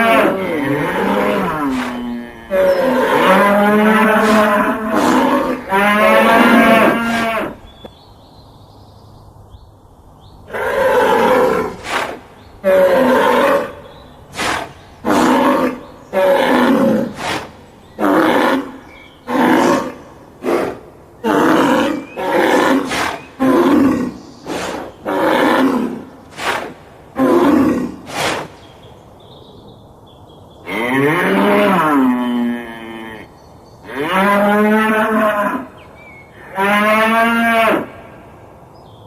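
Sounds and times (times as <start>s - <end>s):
long lowing moo: 0.0s - 7.6s
bull bellowing: 0.0s - 7.8s, 10.5s - 28.3s, 30.6s - 38.2s.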